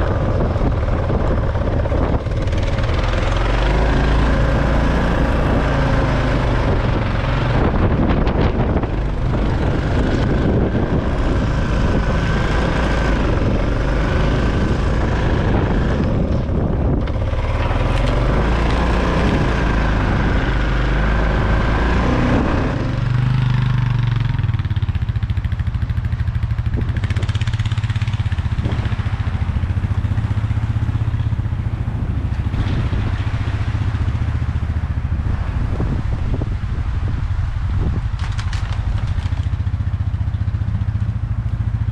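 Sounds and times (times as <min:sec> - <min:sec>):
atv engine running: 0:00.0 - 0:41.9.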